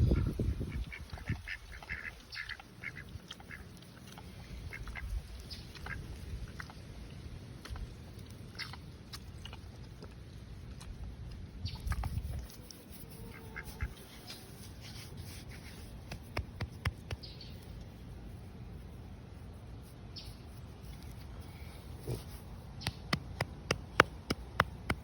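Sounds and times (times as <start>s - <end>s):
ducks quacking: 0.0s - 3.6s.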